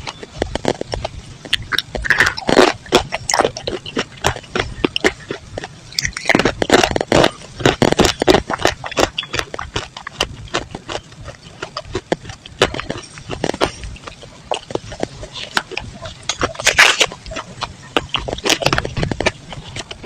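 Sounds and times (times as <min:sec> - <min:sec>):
chalk and clay being chewed: 0:00.0 - 0:20.0.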